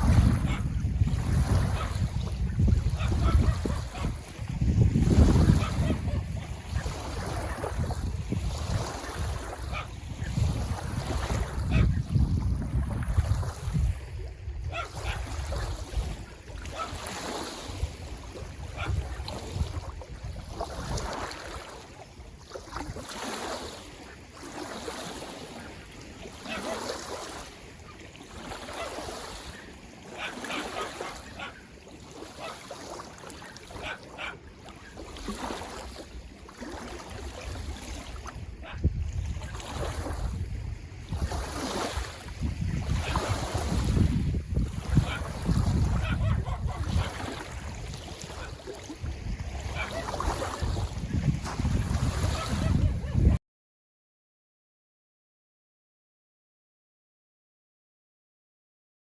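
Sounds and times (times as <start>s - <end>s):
wind buffeting microphone: 0.0s - 21.6s, 37.1s - 53.4s
lake waves lapping on shore: 0.0s - 53.4s.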